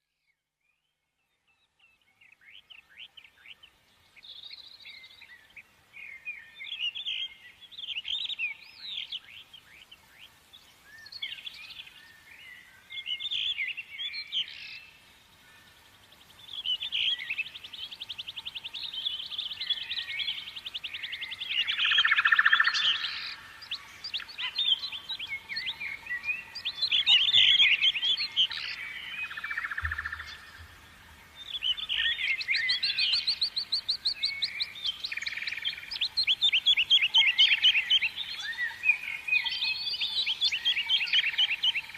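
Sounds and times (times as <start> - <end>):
songbirds chirping and singing: 1.2 - 41.9.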